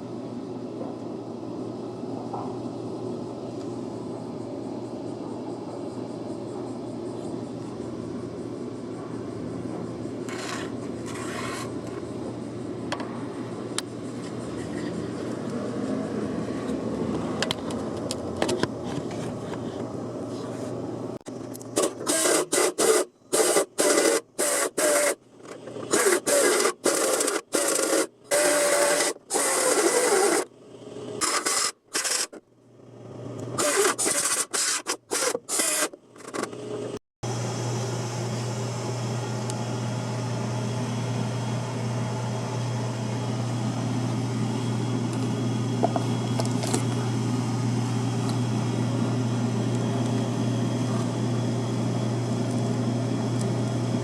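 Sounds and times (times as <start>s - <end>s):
rasping tool on metal: 10.3s - 11.7s.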